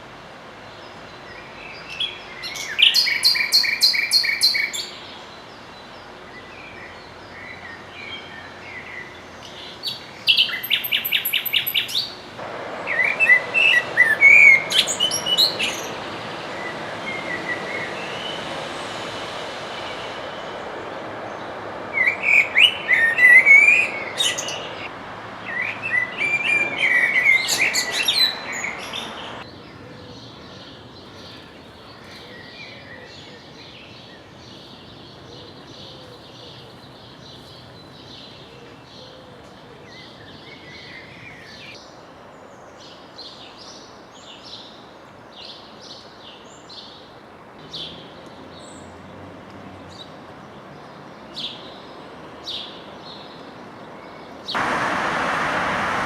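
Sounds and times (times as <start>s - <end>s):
city background noise: 0.0s - 56.0s
songbird warbling song: 0.6s - 12.3s, 12.9s - 18.5s, 21.3s - 49.1s
small birds chirping: 21.4s - 42.0s.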